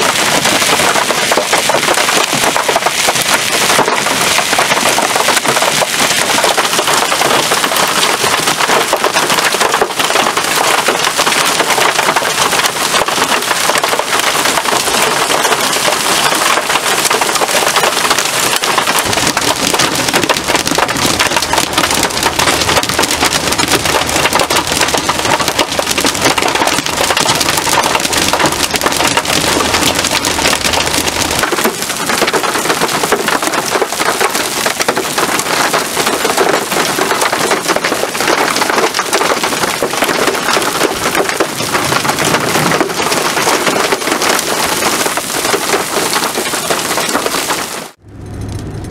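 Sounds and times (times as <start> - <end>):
heavy rain pelting down: 0.0 - 48.9
low thunder rumble: 48.0 - 48.9.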